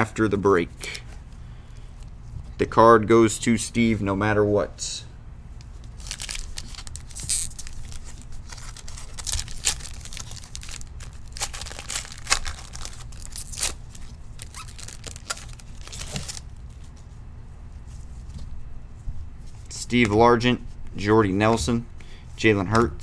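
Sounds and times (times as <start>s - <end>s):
cards being handled: 5.6s - 17.1s
wrapper tearing and crinkling: 5.8s - 16.8s.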